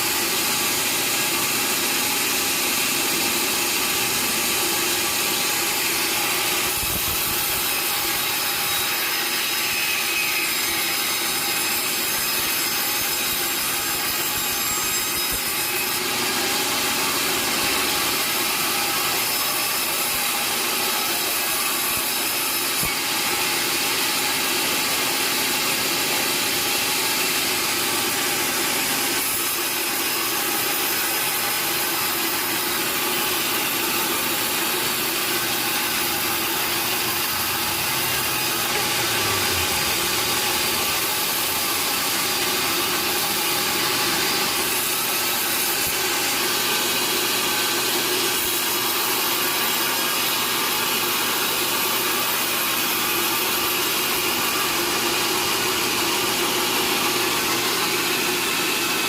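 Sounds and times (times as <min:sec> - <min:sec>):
saw cutting timber: 0:00.0 - 0:59.0
machine hum: 0:37.5 - 0:42.4.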